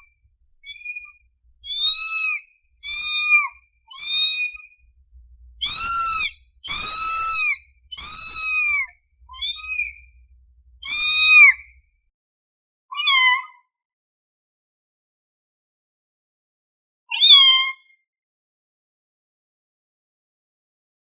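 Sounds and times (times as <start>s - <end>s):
kitten meowing: 0.6s - 4.7s, 5.6s - 10.1s, 10.8s - 11.7s, 12.9s - 13.6s, 17.1s - 17.8s.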